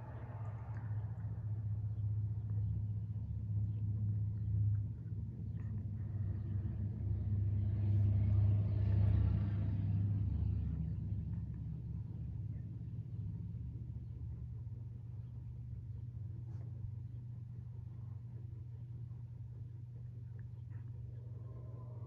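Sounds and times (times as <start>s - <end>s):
ceiling fan motor hum: 0.0s - 22.0s.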